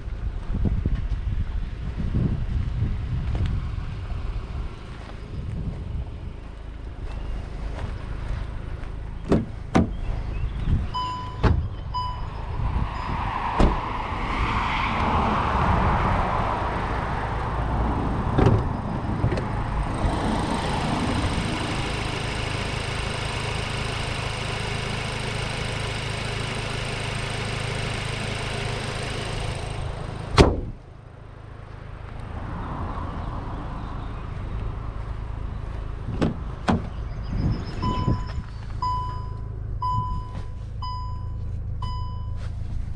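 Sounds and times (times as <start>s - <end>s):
road noise: 0.0s - 42.9s
car engine running: 19.1s - 32.1s
short beeps: 37.8s - 42.4s.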